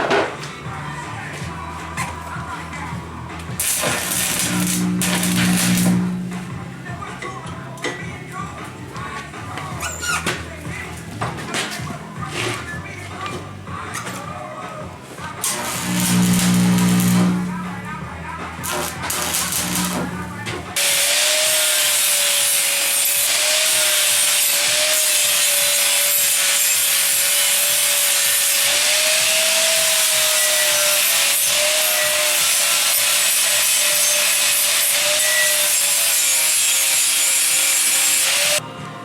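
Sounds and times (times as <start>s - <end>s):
angle grinder grinding steel: 3.6s - 6.6s, 15.4s - 18.0s, 18.6s - 38.6s.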